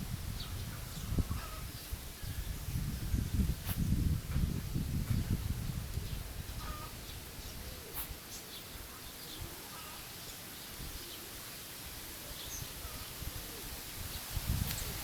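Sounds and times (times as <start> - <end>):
faint wind rumble: 0.0 - 15.0.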